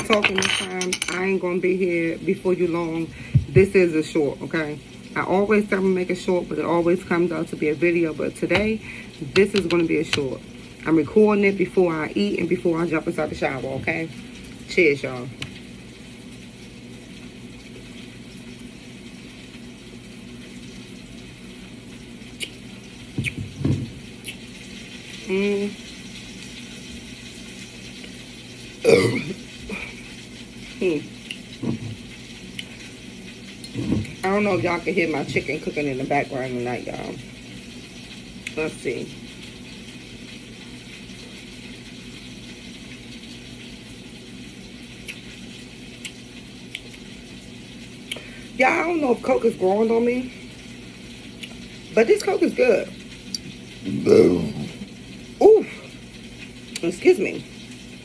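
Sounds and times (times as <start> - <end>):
chicken sizzling on stove: 1.2 - 58.0
person swallowing soda: 53.4 - 55.0.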